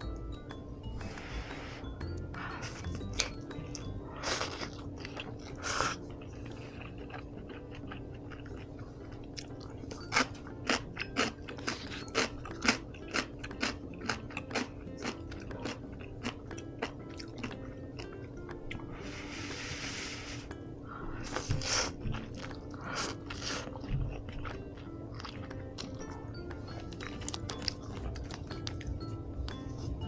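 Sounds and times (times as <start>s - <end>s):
person chewing crunchy food: 1.0s - 29.8s.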